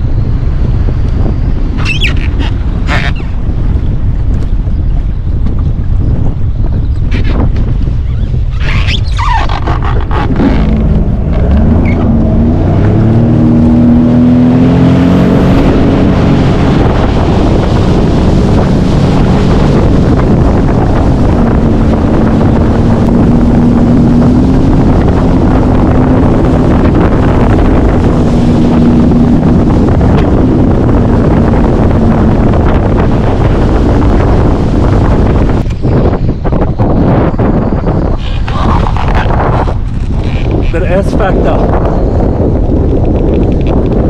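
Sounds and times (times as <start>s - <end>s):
wind buffeting microphone: 0.0s - 44.0s
jet ski engine revving: 8.7s - 37.2s.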